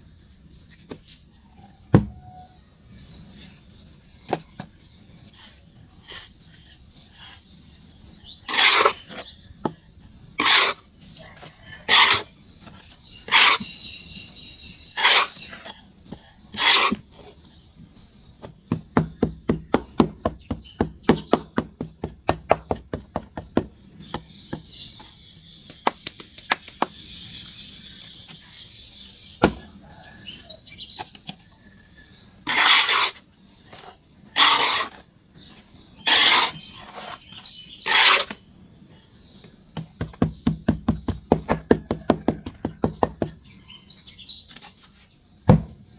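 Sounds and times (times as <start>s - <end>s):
charcoal scraping strokes: 5.1s - 18.8s, 32.4s - 39.4s, 44.5s - 45.2s.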